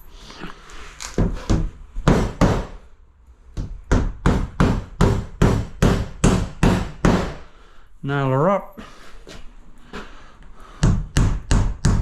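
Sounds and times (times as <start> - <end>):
hammer striking nails: 1.2 - 2.9, 3.6 - 7.5, 10.8 - 12.0.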